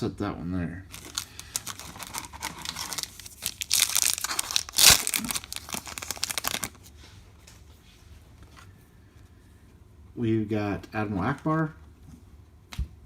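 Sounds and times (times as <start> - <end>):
foil wrapper tearing and crinkling: 0.9 - 6.8.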